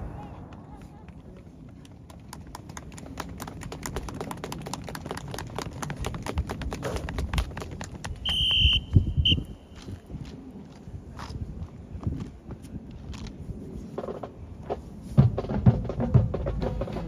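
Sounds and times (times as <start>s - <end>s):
whistle blast: 8.2s - 9.7s.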